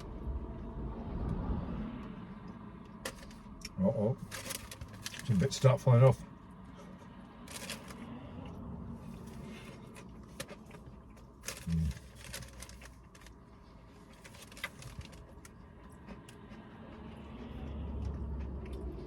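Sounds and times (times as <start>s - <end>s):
person chewing crispy pie: 6.6s - 19.0s.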